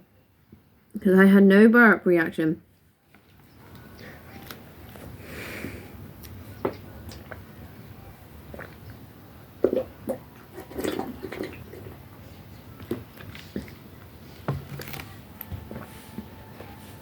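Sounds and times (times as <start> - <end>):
gulping fizzy drink: 8.4 - 14.0.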